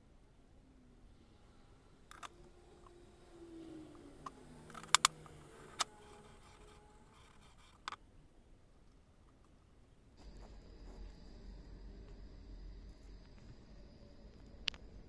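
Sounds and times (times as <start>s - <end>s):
faint low hum: 0.0s - 15.0s
small tools clicking on workbench: 2.1s - 3.0s, 3.6s - 8.0s.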